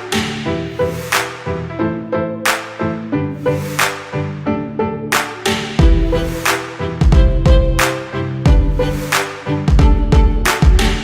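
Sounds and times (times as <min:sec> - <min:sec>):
beat of sharp hits: 0:05.5 - 0:11.0
heavy bass: 0:05.8 - 0:11.0.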